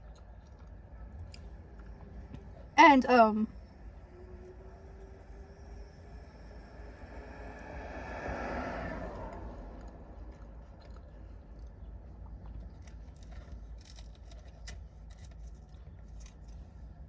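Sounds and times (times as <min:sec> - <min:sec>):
chewing with crisp crunches: 0:00.0 - 0:02.6, 0:09.8 - 0:17.0
passing vehicle: 0:03.5 - 0:12.5.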